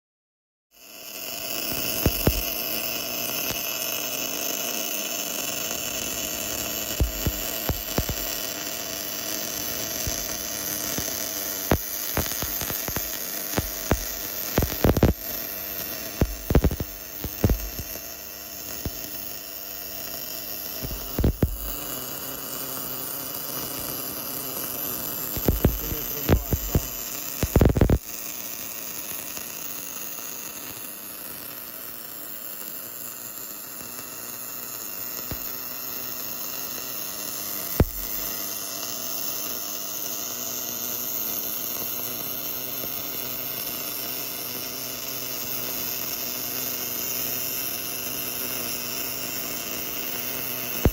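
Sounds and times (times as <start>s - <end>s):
welding arc hiss: 0.8s - 50.9s
machine hum: 9.8s - 19.1s, 20.5s - 21.9s, 25.1s - 28.0s.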